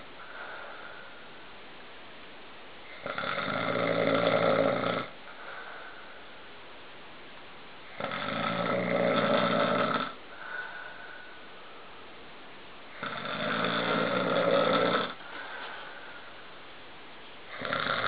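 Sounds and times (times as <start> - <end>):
soft breath out: 0.2 - 1.4, 5.2 - 6.4, 10.3 - 11.9, 15.2 - 16.6
man snoring: 2.9 - 5.2, 7.9 - 10.2, 12.9 - 15.2, 17.5 - 18.0.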